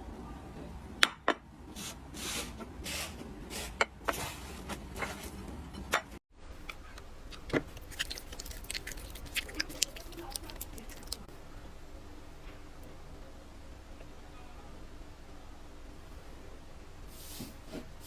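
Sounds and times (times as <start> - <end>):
slime squelching and popping: 7.3 - 11.3.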